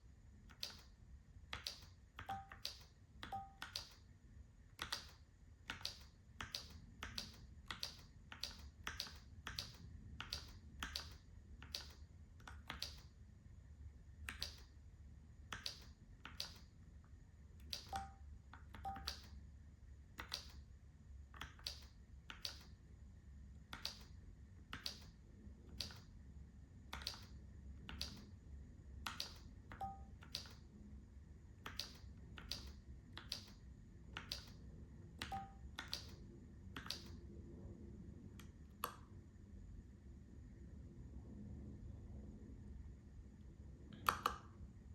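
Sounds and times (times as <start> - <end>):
mechanical keyboard keystrokes: 4.8 - 13.1, 20.2 - 20.6, 26.9 - 28.3, 31.6 - 34.6, 35.2 - 36.2, 36.8 - 37.2.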